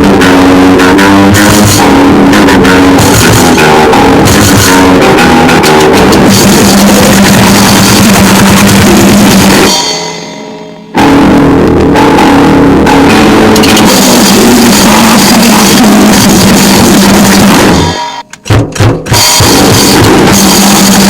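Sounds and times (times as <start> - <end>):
distorted guitar: 0.0 - 21.0
pounding drums: 0.0 - 21.0
ringing tones: 12.0 - 18.4.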